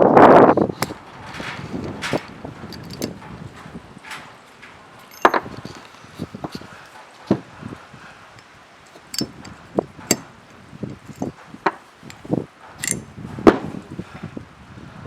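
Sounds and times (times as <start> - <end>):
metal rattle: 0.2 - 13.8
metal parts clicking and clinking: 0.5 - 7.5, 8.3 - 13.1.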